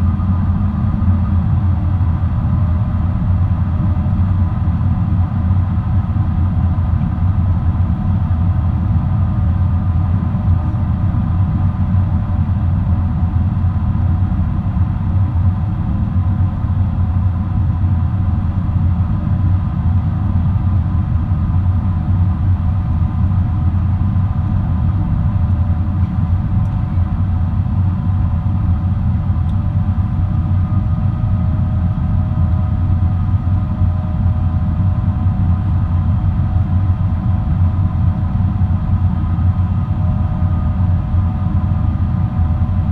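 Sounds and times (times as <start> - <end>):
airliner cabin engine rumble: 0.0 - 42.9.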